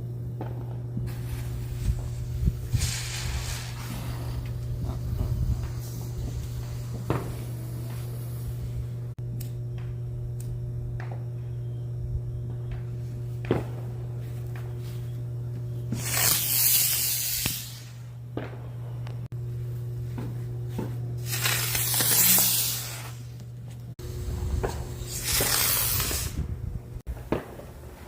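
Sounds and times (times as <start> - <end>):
steady low hum: 0.0 - 28.0
fireworks popping: 0.4 - 8.9, 15.9 - 18.8, 20.8 - 23.4, 24.3 - 28.0
fireworks hissing: 1.0 - 9.2, 15.9 - 18.2, 21.2 - 23.4, 24.0 - 28.0.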